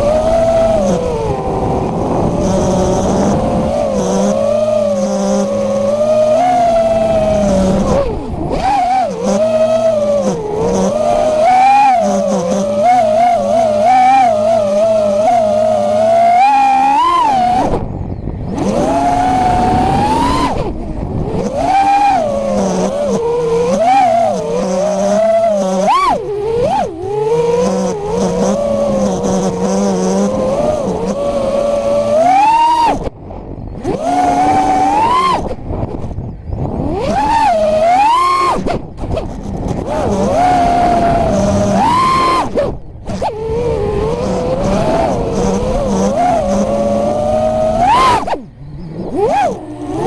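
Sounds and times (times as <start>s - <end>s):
quadcopter motors whining: 0.0s - 50.0s.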